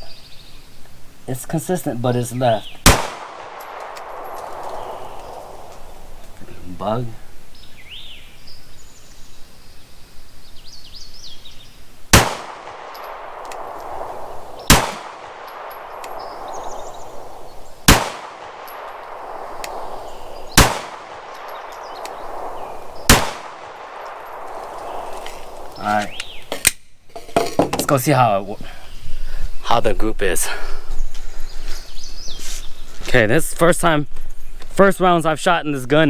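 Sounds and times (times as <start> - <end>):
pistol shots: 2.8 - 6.4, 12.1 - 26.5.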